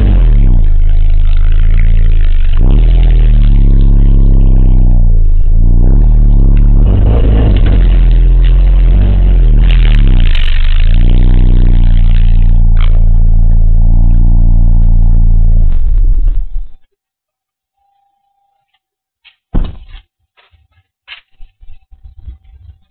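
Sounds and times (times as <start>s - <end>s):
car engine and road rumble: 0.0s - 16.8s.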